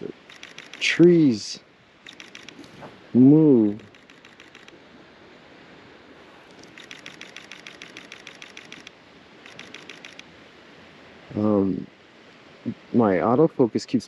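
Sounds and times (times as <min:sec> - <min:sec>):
camera shutter bursts: 0:00.2 - 0:01.0, 0:02.0 - 0:02.8, 0:03.8 - 0:04.8, 0:06.6 - 0:10.3.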